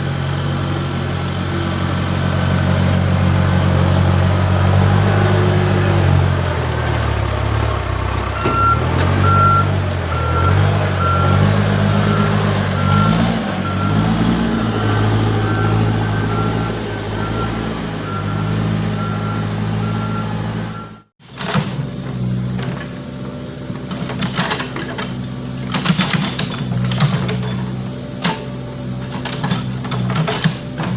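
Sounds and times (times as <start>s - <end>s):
diesel engine running under load: 0.0s - 30.9s
reversing alarm beeping: 8.4s - 21.1s.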